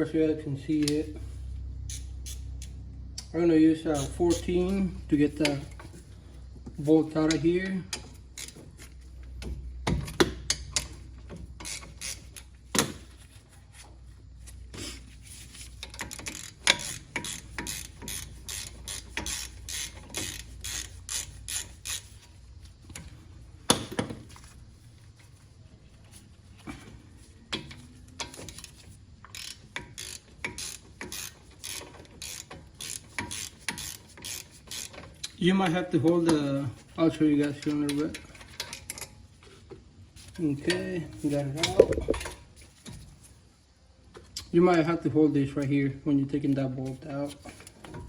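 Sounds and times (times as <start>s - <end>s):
hand ratchet clicking: 11.6s - 12.9s, 15.8s - 22.2s, 29.3s - 35.3s.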